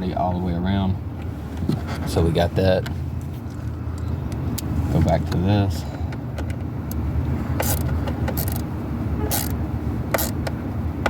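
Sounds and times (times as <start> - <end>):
ratchet clicking: 7.6 - 8.7, 9.3 - 10.6.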